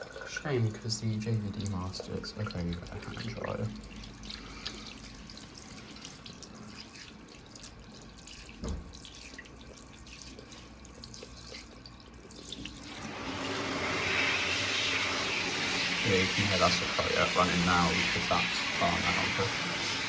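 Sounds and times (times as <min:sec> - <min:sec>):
tap water running into washbasin: 0:00.0 - 0:20.0
hand dryer blowing: 0:12.9 - 0:20.0.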